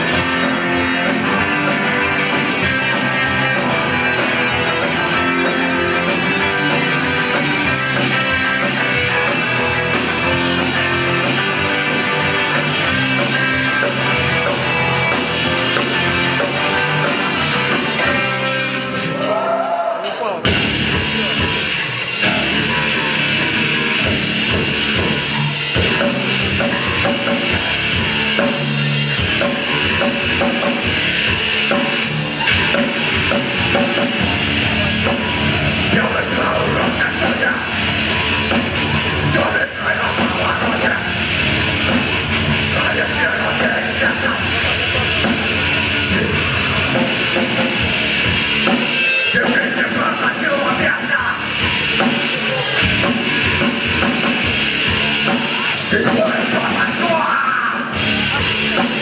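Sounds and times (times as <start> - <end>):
distorted guitars: 0.0 - 59.0
drum kit: 0.0 - 59.0
heavy rock band playing live: 0.0 - 59.0.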